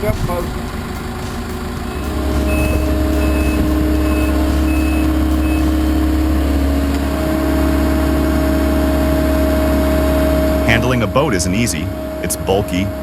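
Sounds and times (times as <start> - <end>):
backup alarm beeping: 0.0 - 6.4
excavator diesel engine: 0.0 - 13.0.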